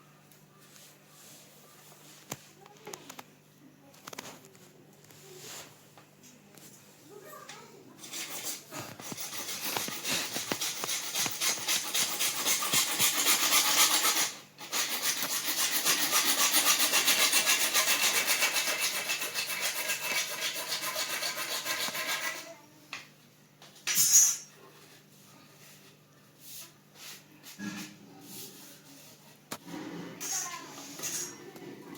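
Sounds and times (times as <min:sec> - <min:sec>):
hand saw cutting plastic pipe: 0:08.0 - 0:22.5.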